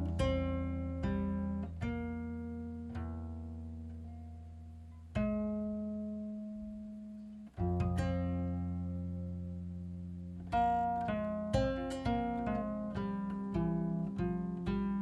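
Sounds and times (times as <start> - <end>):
slow quiet instrumental melody: 0.0 - 15.0.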